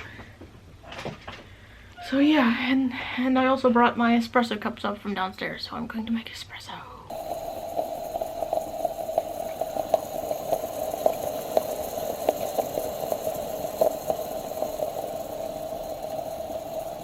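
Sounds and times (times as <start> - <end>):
crackling ticks: 7.1 - 17.0
espresso machine humming: 7.1 - 17.0.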